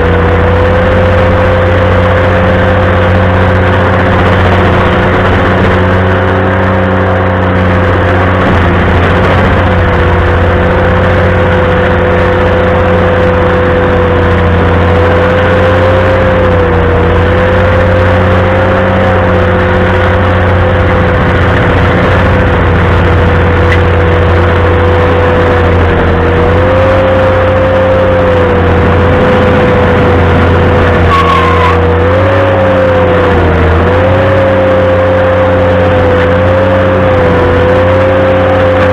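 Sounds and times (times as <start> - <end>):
stump grinder whine: 0.0 - 38.9
tractor engine drone: 0.0 - 38.9.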